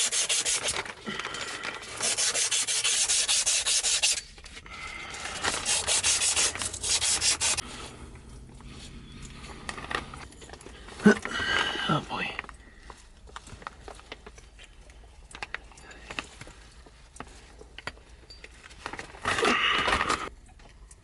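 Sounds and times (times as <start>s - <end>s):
cloth scrubbing copper pipe: 0.0s - 0.9s, 1.8s - 4.4s, 5.2s - 7.8s.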